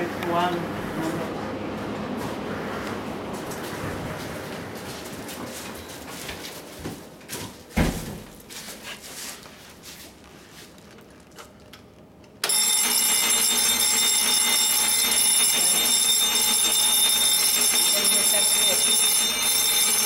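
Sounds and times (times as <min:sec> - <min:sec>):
thump: 0:07.8 - 0:08.3
fire alarm bell ringing: 0:12.4 - 0:20.0.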